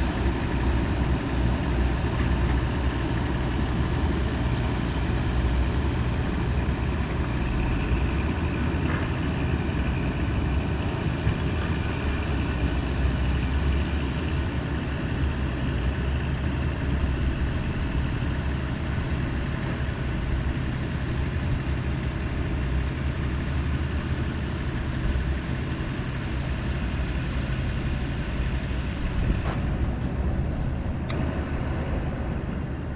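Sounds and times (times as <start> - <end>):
heavy diesel engine rumble: 0.0 - 32.9.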